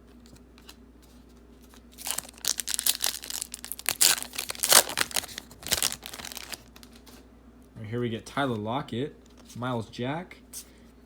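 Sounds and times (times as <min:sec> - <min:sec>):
wrapper tearing and crinkling: 0:02.0 - 0:07.0.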